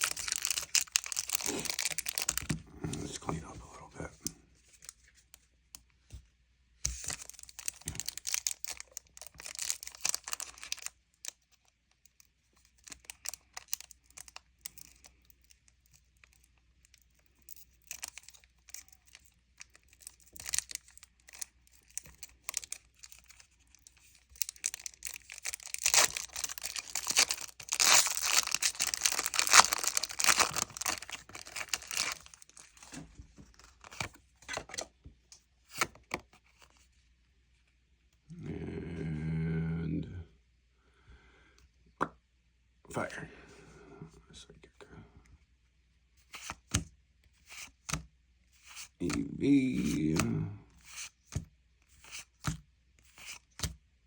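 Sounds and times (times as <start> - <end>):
foil wrappers crinkling and tearing: 0.0 - 2.6, 6.9 - 11.4, 17.4 - 33.0.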